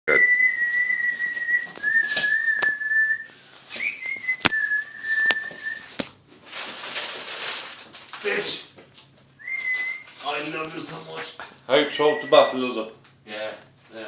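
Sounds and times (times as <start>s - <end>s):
high steady whistle: 0.1s - 5.9s, 9.4s - 10.2s, 11.9s - 12.7s.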